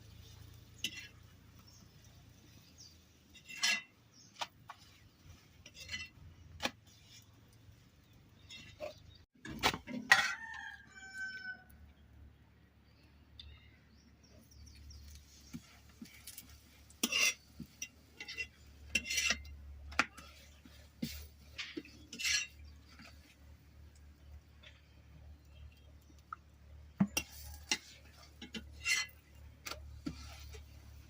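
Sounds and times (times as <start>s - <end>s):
rooster crowing: 10.1s - 11.7s.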